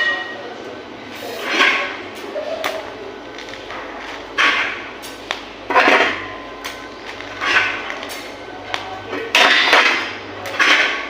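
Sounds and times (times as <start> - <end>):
clattering scraping on steel: 7.3 - 8.0, 9.1 - 11.0.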